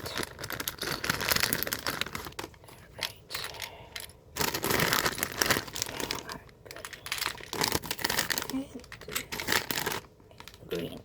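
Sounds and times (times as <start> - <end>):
plastic pieces clattering: 0.0 - 11.0
rustling: 4.4 - 10.8.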